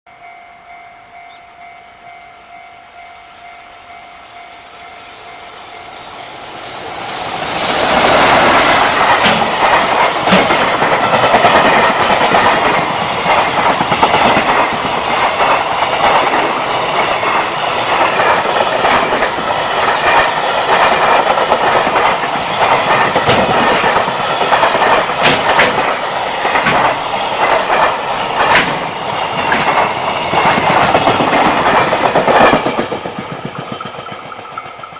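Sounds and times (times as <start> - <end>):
level crossing bell ringing: 0.1 - 6.6
freight train rumbling past: 0.1 - 34.9
wheels clattering over rail joints: 7.6 - 34.9.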